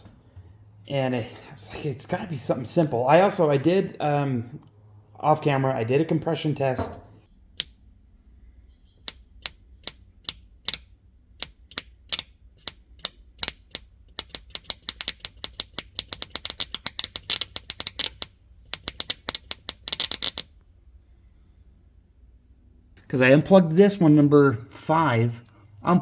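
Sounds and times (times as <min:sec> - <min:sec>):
sharp mechanical clicks: 0:07.5 - 0:07.8, 0:09.0 - 0:20.5.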